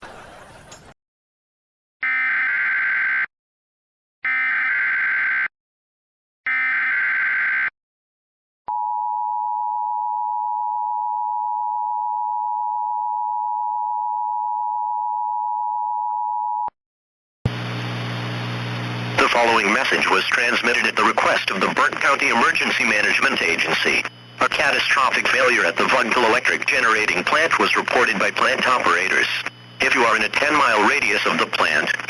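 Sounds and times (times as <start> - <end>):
digital data bursts: 19.2 - 32.0.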